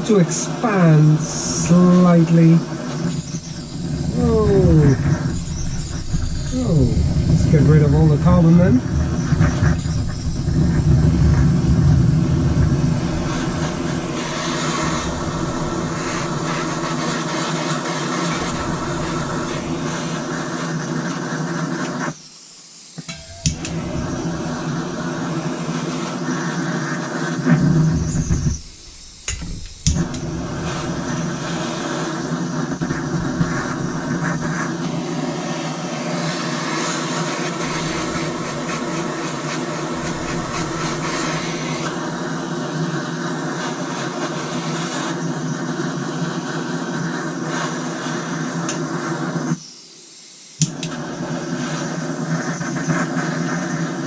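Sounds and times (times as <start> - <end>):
small electric power tool motor: 3.0 - 22.3, 22.9 - 42.2.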